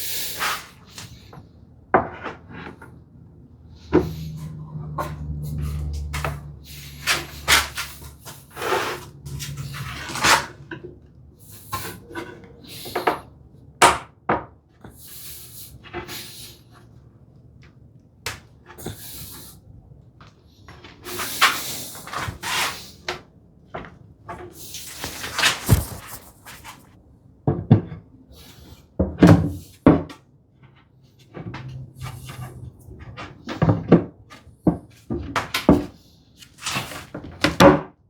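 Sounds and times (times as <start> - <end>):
wood scraping: 3.9 - 10.9, 20.8 - 23.1, 24.3 - 27.0.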